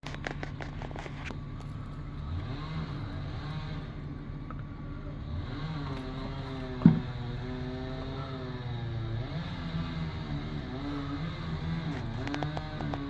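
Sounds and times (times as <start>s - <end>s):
engine running steadily: 0.0s - 13.0s.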